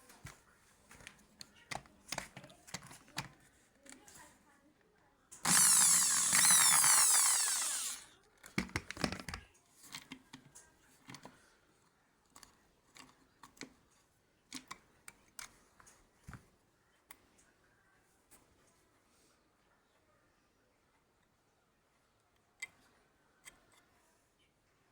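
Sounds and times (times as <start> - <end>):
woodworking power tool running: 5.4 - 8.1.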